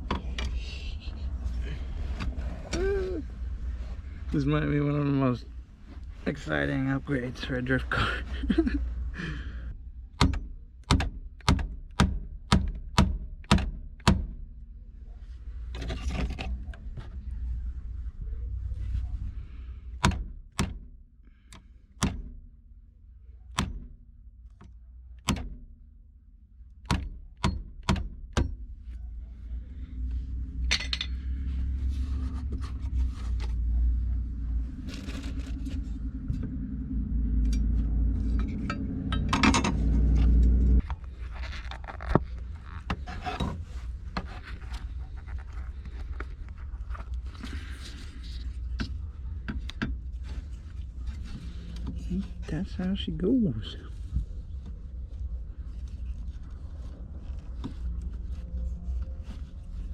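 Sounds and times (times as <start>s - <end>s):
tools knocking and clicking: 10.2s - 14.4s, 26.8s - 28.6s, 38.3s - 40.2s.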